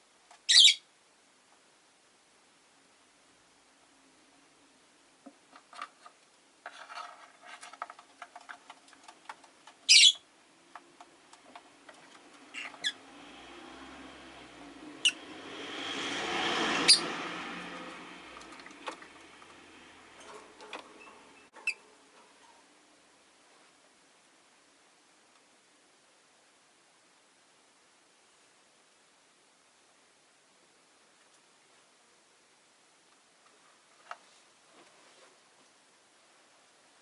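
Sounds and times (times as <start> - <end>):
bird chirping: 0.4 - 0.9, 9.8 - 10.3, 12.5 - 13.0, 15.0 - 15.2, 16.8 - 17.2
birds scratching and clicking: 5.5 - 10.0, 10.6 - 13.8, 16.6 - 22.6
passing vehicle: 12.2 - 21.4.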